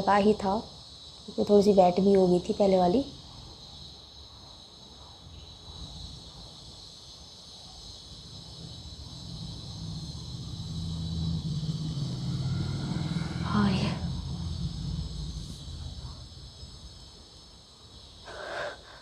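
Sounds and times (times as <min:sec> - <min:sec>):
insects chirring: 0:00.0 - 0:19.0
low engine rumble: 0:08.3 - 0:18.2.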